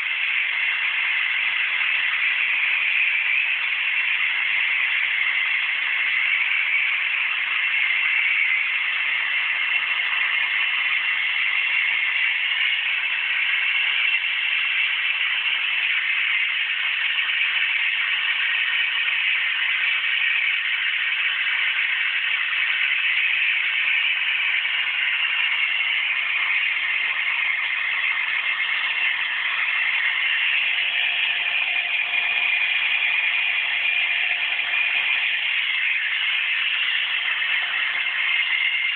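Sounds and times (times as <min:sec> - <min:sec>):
vacuum cleaner motor running: 0:25.2 - 0:38.9.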